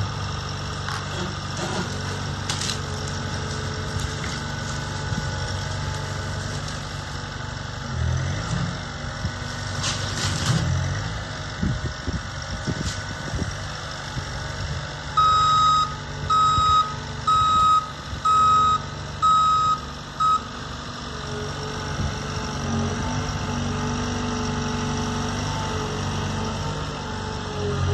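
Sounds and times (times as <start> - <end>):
heavy machine engine running: 0.0 - 27.9
backup alarm beeping: 15.2 - 20.5.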